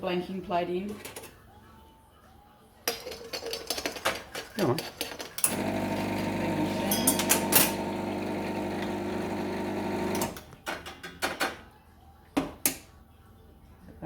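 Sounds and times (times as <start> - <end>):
espresso machine pump humming: 5.5 - 10.3.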